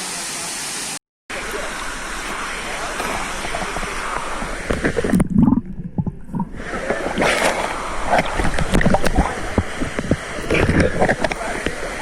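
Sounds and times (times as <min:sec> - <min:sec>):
waterfall rushing and splashing: 0:00.0 - 0:05.3, 0:06.6 - 0:12.0
short sharp splashes or knocks: 0:01.4 - 0:05.5.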